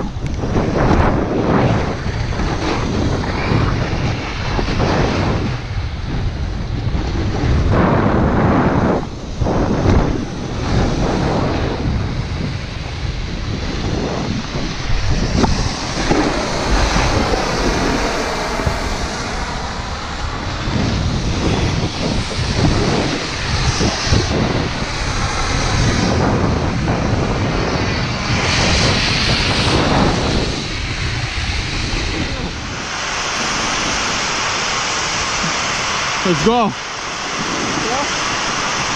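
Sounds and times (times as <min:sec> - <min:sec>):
wind buffeting microphone: 0:00.0 - 0:38.9
snowboard scraping snow: 0:13.9 - 0:30.7.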